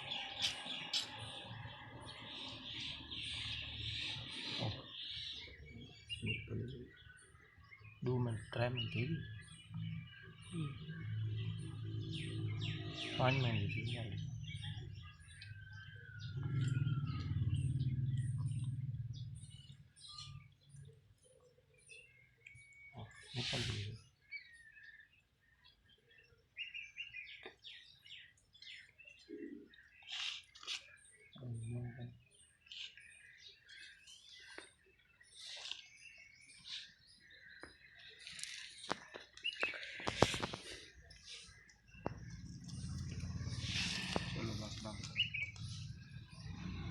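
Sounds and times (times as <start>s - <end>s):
birds chirping: 0.0s - 46.9s
low rumble: 16.3s - 19.9s, 42.0s - 46.9s.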